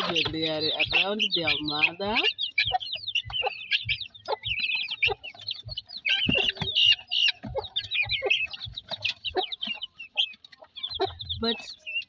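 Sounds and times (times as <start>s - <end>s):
chicks peeping: 0.0s - 12.0s.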